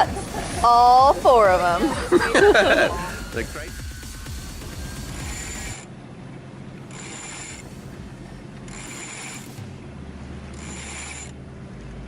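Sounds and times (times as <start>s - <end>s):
winch ratcheting whir: 3.9s - 12.0s.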